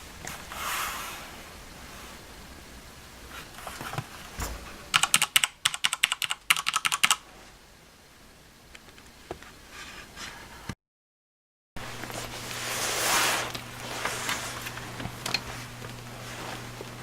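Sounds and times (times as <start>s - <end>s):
mechanical keyboard key clicks: 5.0s - 7.2s.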